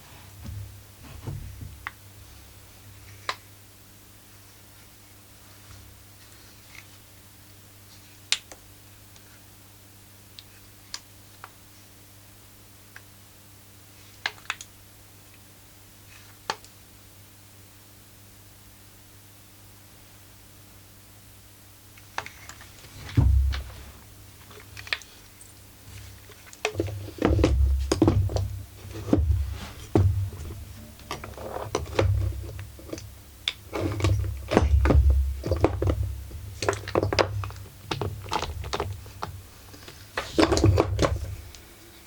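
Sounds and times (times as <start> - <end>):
knocks and thuds of tools: 0.4 - 1.9, 22.9 - 24.1, 26.7 - 39.5, 40.2 - 41.5.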